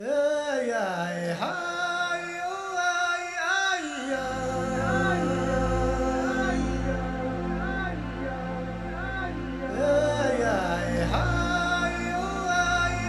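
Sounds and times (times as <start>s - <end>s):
gliding vocal or synth tones: 3.9s - 13.0s
low bass layer: 4.2s - 13.0s.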